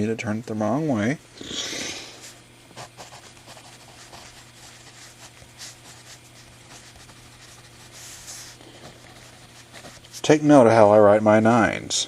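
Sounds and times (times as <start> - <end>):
pencil scratching on paper: 2.8 - 10.0.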